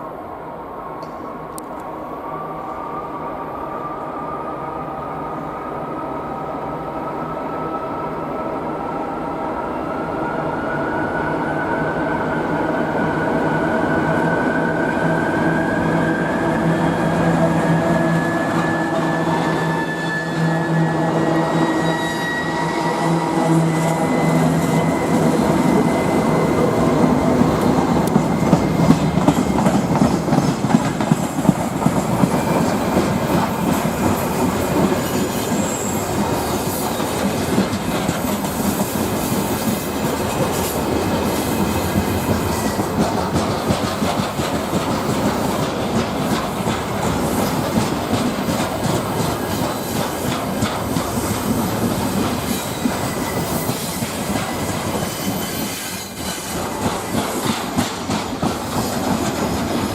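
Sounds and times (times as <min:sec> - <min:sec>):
thin steady squeal: 0:14.7 - 0:29.6.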